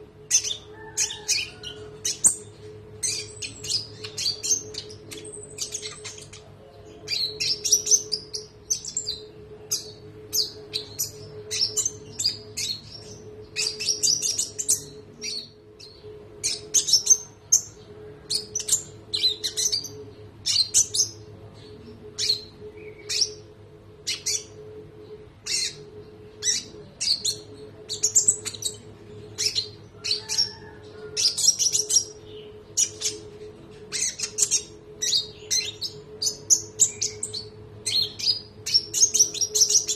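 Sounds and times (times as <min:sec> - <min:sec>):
songbird chirping and trilling: 0:00.0 - 0:39.9
steady low hum: 0:00.0 - 0:39.9.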